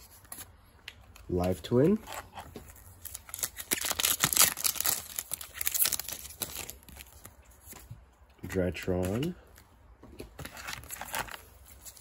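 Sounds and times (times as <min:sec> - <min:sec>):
foil wrapper crinkling: 0:02.7 - 0:07.3.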